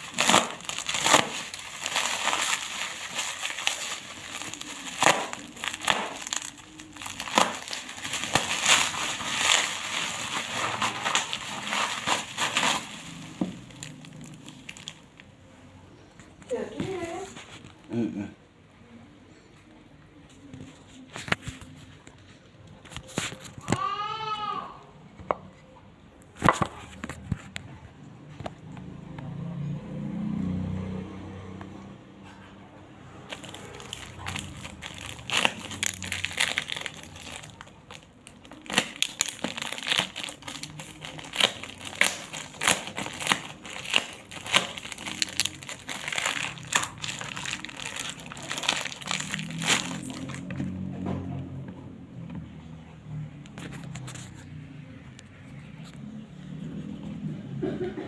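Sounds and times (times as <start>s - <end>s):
packaging crinkling and crackling: 0.0s - 15.4s, 33.2s - 50.9s.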